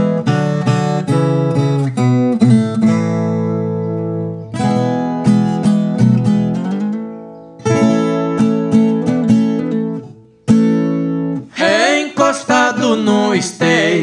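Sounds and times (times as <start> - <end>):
acoustic guitar strumming chords: 0.0 - 14.0
person singing: 11.5 - 14.0.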